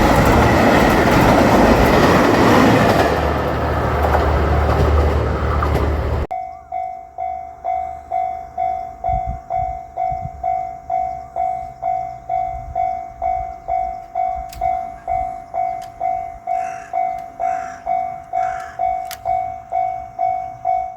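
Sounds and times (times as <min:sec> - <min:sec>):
train passing: 0:00.0 - 0:20.9
level crossing bell ringing: 0:06.3 - 0:20.9.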